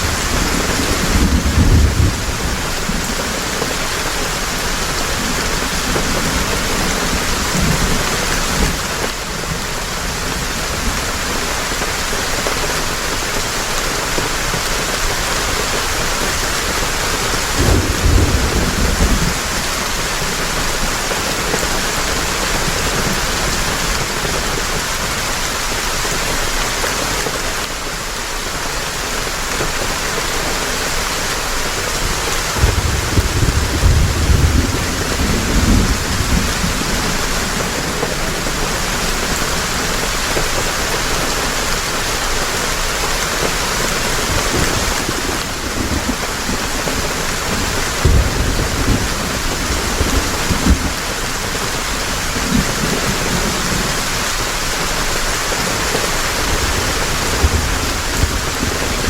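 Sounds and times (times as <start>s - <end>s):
thunder rumbles: 0.0s - 12.5s, 16.7s - 24.9s, 31.9s - 41.3s, 43.4s - 59.0s
heavy rain falling: 0.0s - 59.0s.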